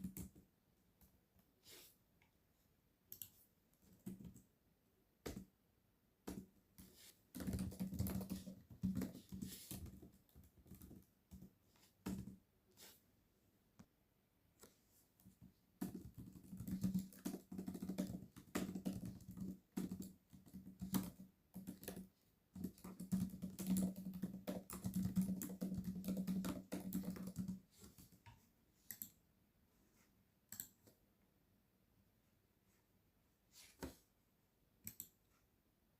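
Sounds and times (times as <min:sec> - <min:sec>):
typing on computer keyboard: 0:00.0 - 0:00.4, 0:07.3 - 0:11.5, 0:15.8 - 0:28.2.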